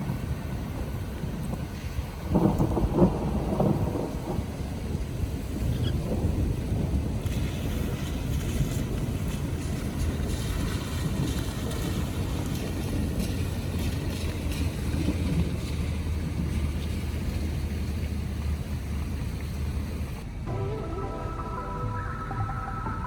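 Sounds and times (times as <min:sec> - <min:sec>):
heavy rain on metal roof: 0:00.0 - 0:22.1
low thunder rumble: 0:00.1 - 0:14.2
rain drop hits: 0:01.2 - 0:23.0.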